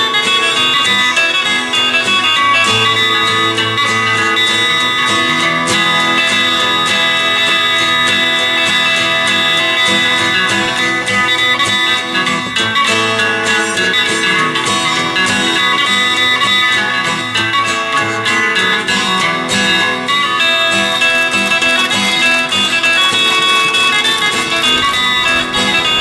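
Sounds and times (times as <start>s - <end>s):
guitar background music: 0.0s - 26.0s.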